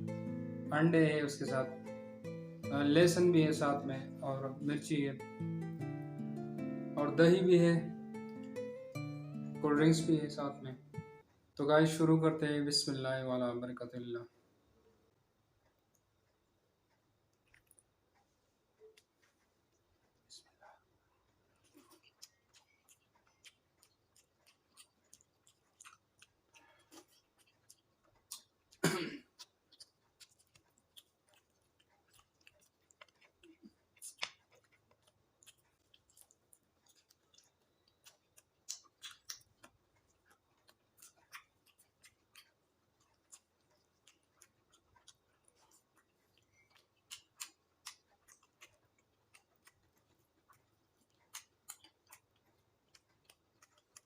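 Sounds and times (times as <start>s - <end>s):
person chewing: 7.8s - 9.6s, 15.6s - 54.0s.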